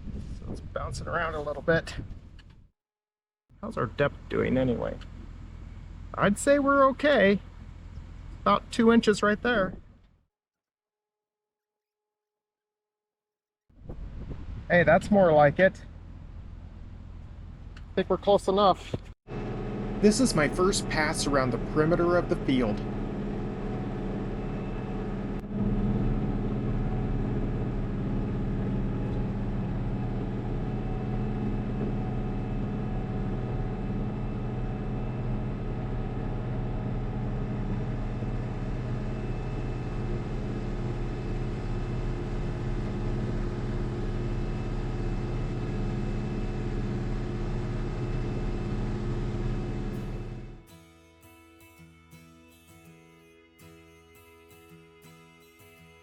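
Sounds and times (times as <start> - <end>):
tractor diesel engine running: 3.6 - 10.1, 14.0 - 50.6.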